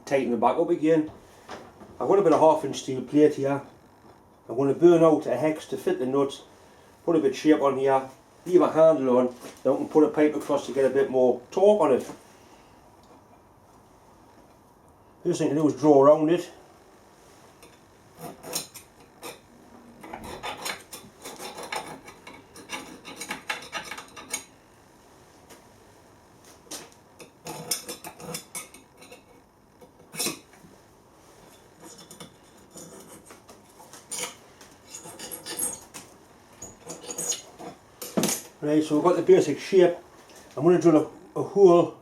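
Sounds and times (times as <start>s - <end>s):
marking tool scratching on steel: 18.2s - 19.4s, 20.0s - 24.5s, 31.6s - 35.9s, 36.6s - 37.8s.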